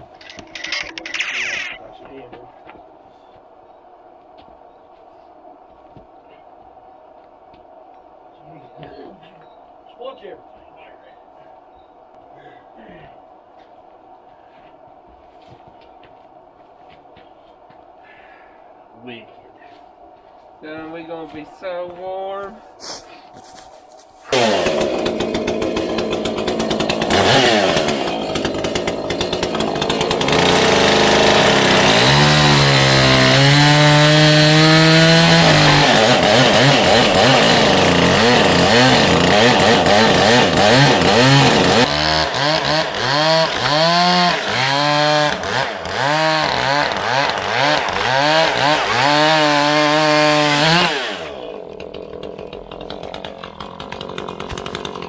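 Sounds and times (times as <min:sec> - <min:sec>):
chainsaw revving: 0:00.0 - 0:01.8, 0:24.3 - 0:55.0.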